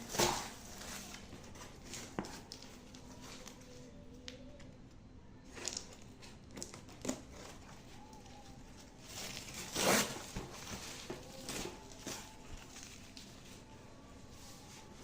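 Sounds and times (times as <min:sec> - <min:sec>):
packaging crinkling: 0:05.5 - 0:15.0
packaging rustle or tear: 0:05.5 - 0:15.0.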